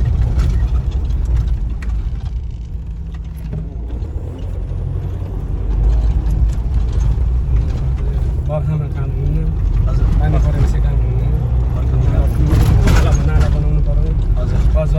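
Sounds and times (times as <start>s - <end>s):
vehicles passing with low rumble: 0.0s - 14.9s.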